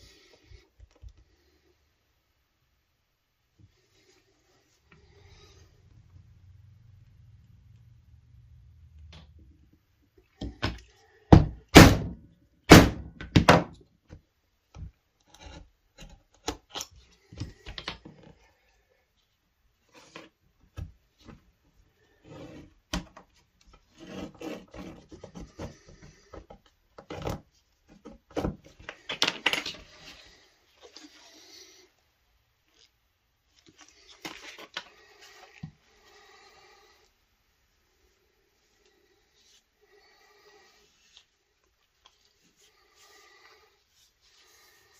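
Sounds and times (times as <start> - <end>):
loud knocks on wood: 11.3 - 13.7.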